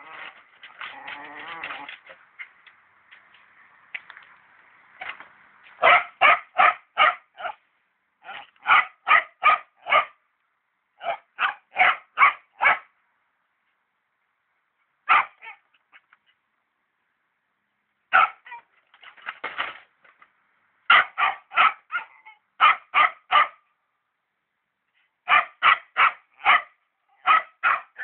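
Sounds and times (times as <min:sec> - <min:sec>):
dog barking: 0:05.8 - 0:07.6, 0:08.2 - 0:10.2, 0:11.0 - 0:12.9, 0:15.1 - 0:15.6, 0:18.1 - 0:18.6, 0:20.9 - 0:23.6, 0:25.3 - 0:28.0.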